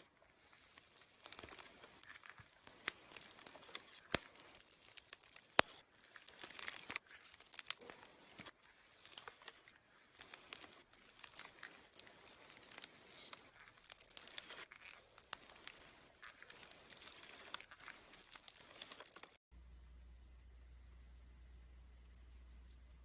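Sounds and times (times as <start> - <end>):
slime squeezed crackling: 0.0 - 19.4
low steady hum: 19.5 - 23.0.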